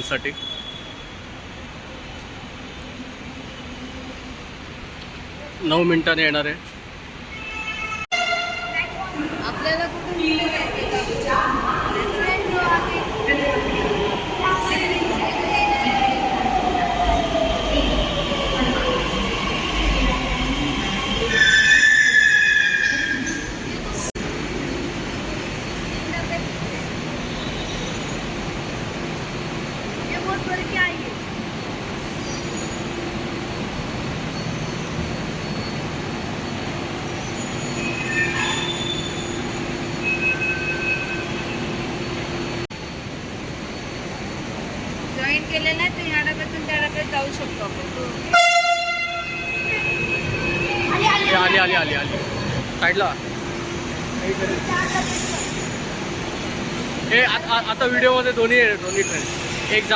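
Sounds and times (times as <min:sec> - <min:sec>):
train rumble: 0:08.0 - 0:40.0
high-pitched wheel squeals: 0:21.3 - 0:23.7, 0:37.3 - 0:41.7.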